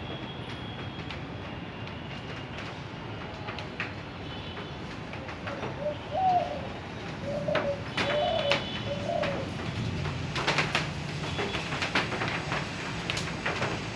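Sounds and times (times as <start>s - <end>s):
dove cooing: 5.5s - 9.7s.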